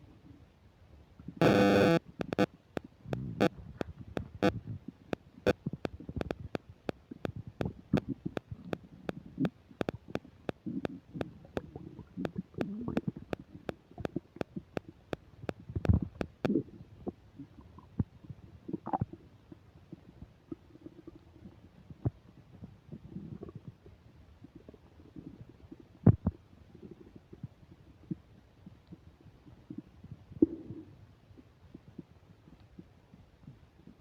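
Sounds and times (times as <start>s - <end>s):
stomach gurgling and rumbling: 1.3s - 34.0s
sharp clicks: 1.4s - 2.5s, 15.9s - 16.5s.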